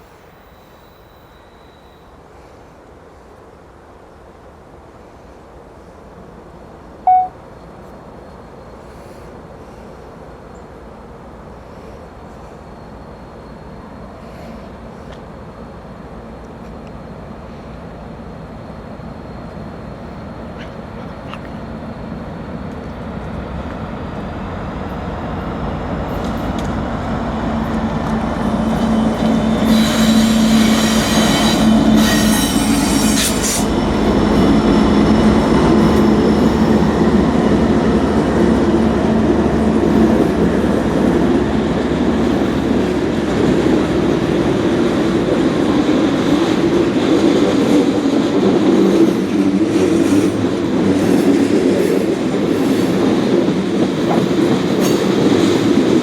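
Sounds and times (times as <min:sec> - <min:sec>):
diesel locomotive engines: 0:04.2 - 0:56.0
high-pitched train horn tones: 0:07.1 - 0:07.3, 0:29.0 - 0:34.6
train wheel clatter and rumble: 0:19.4 - 0:56.0.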